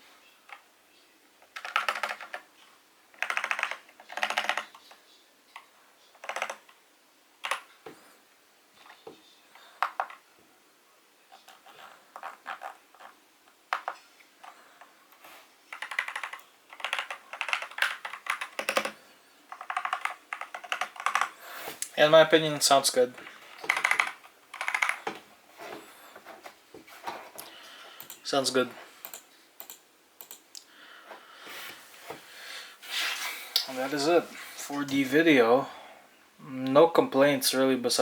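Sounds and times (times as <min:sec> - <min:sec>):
mechanical keyboard typing: 0:01.5 - 0:02.5, 0:03.2 - 0:04.9, 0:06.2 - 0:06.8, 0:07.4 - 0:07.7, 0:11.6 - 0:13.1, 0:15.7 - 0:21.3, 0:23.6 - 0:25.1, 0:29.0 - 0:30.4.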